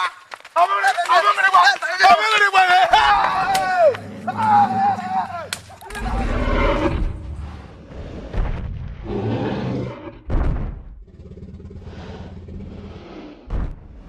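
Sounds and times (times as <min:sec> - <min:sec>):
rumbling swells: 0:04.0 - 0:14.0
booming hits: 0:10.1 - 0:11.1, 0:13.4 - 0:14.0.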